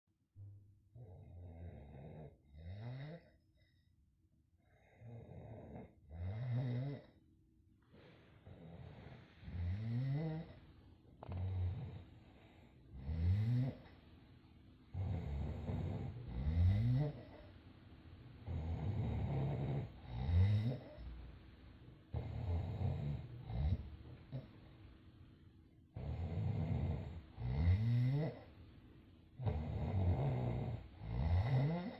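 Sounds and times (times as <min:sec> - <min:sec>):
person snoring: 0:08.0 - 0:10.6, 0:11.2 - 0:14.0, 0:14.9 - 0:17.5, 0:18.4 - 0:21.0, 0:22.1 - 0:24.5, 0:26.0 - 0:28.5, 0:29.4 - 0:31.9.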